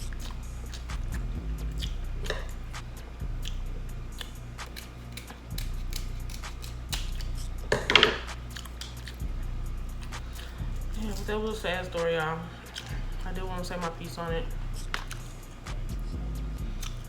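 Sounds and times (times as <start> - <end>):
chewing mouth smacks: 0.0 - 7.4, 8.2 - 9.2, 12.7 - 13.0, 14.8 - 15.8, 16.8 - 17.0.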